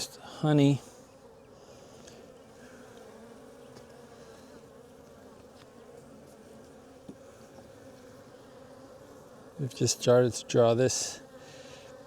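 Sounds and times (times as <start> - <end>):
honey bees buzzing: 0.0 - 12.0.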